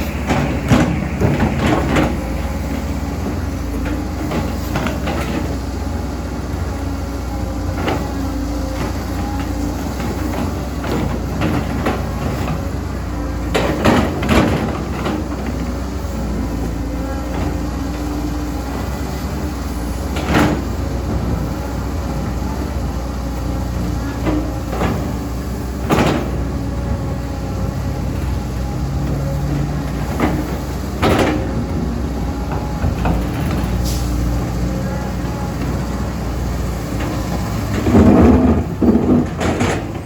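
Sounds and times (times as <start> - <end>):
excavator running while digging: 0.0 - 40.0.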